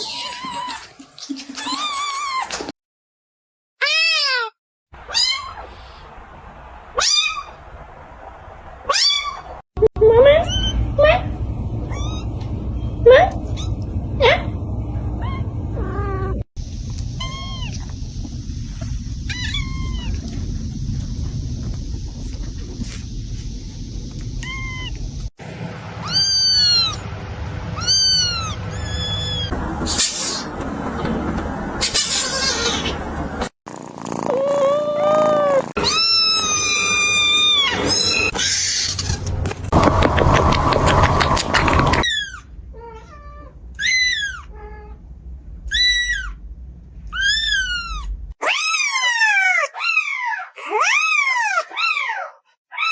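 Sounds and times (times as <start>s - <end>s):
kitten meowing: 5.1s - 5.7s, 26.0s - 27.0s, 27.8s - 29.5s, 35.8s - 39.2s, 45.7s - 46.4s.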